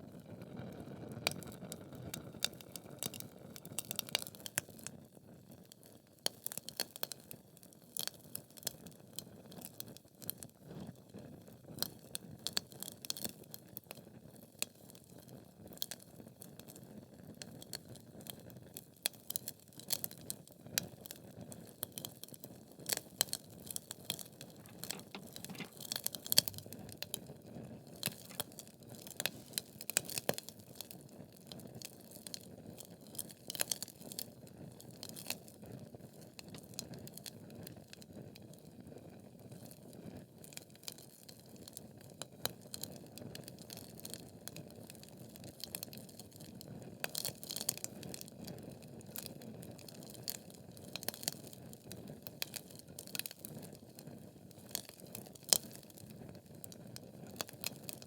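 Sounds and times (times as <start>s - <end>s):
logs crackling and popping: 24.6s - 26.9s.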